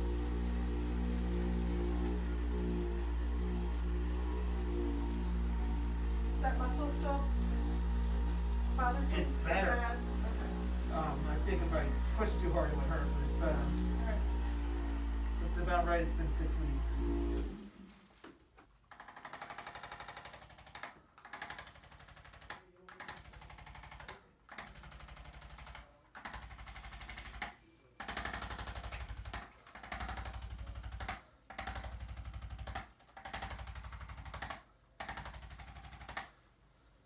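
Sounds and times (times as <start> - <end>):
electric percussion instrument pulsing: 0.0 - 17.8.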